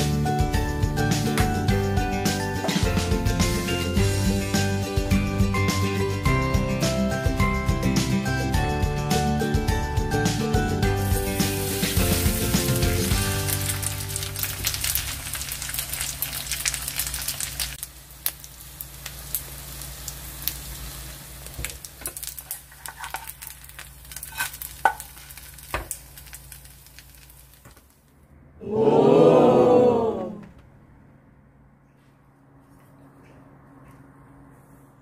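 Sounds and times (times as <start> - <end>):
batter sizzling in oil: 11.0 - 28.0
loud wavering sound: 28.2 - 31.8.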